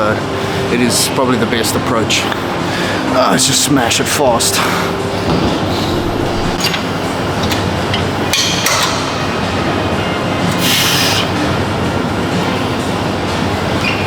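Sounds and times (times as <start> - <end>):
steady din: 5.3 - 7.3.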